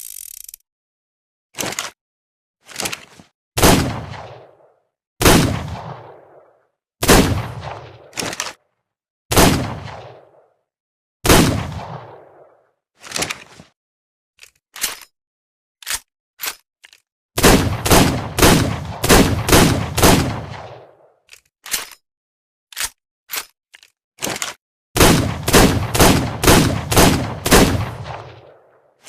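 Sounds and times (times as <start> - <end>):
revolver gunshots echoing: 3.6 - 8.2, 9.3 - 10.5, 11.2 - 12.6, 17.4 - 21.1, 25.0 - 28.8.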